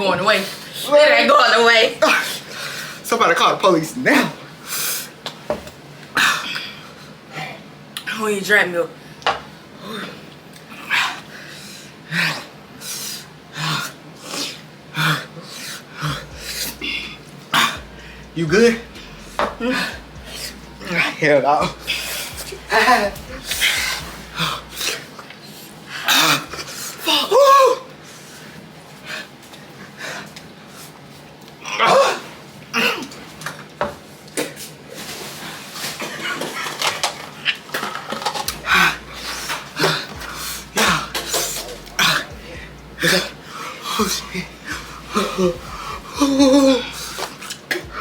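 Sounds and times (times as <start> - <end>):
person coughing: 38.5 - 47.3
sharp vocal outbursts: 38.5 - 47.3
person gasping and puffing: 38.5 - 48.0.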